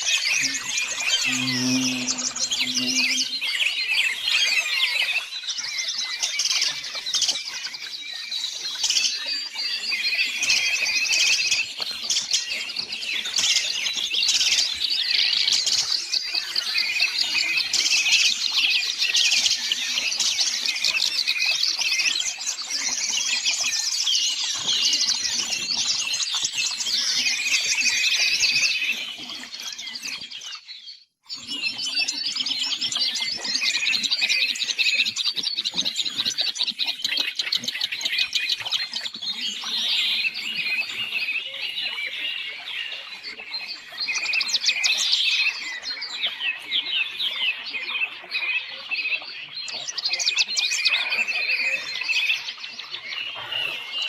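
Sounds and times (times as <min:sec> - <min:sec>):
songbirds singing: 0:00.0 - 0:54.0.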